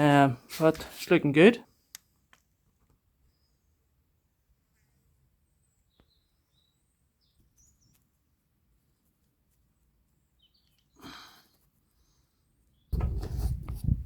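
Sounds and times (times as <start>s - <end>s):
faint bird chirps: 3.2s - 3.9s, 4.7s - 8.2s, 10.1s - 13.0s.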